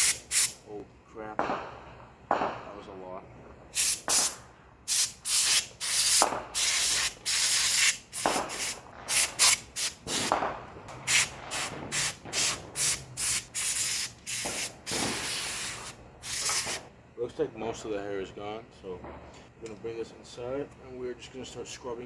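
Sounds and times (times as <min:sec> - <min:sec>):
compressed air hissing bursts: 0:00.0 - 0:00.6, 0:03.7 - 0:10.4, 0:11.0 - 0:16.9.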